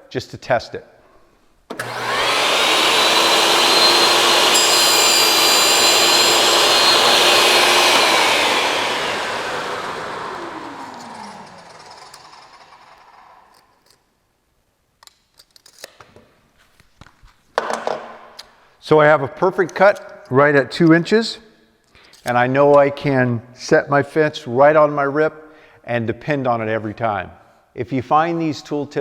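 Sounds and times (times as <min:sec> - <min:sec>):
table saw running: 0:01.7 - 0:13.5
saw blade spinning down: 0:01.7 - 0:13.8.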